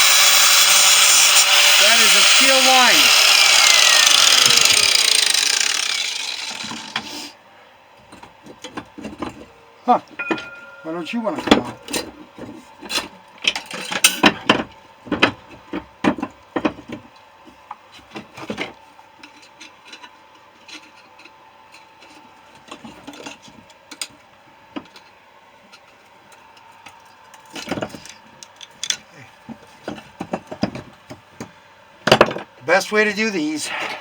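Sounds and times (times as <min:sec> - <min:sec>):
hand tools knocking on metal: 0:10.2 - 0:12.1.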